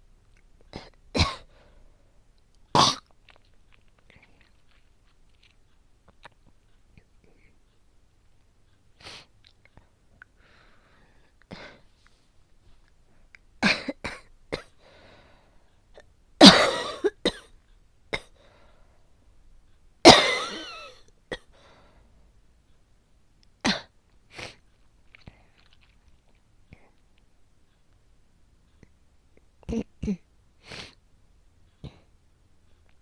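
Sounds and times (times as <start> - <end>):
person coughing: 0.8 - 1.5, 2.8 - 3.0, 13.6 - 14.7, 16.4 - 17.5, 20.1 - 21.5, 23.6 - 23.9.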